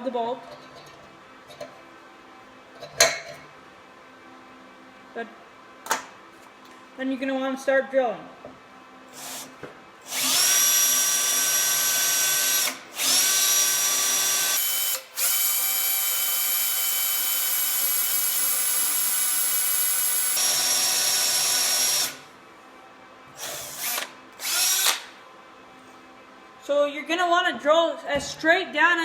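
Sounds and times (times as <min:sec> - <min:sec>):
electric drill whining: 0:10.1 - 0:22.3, 0:23.4 - 0:25.2.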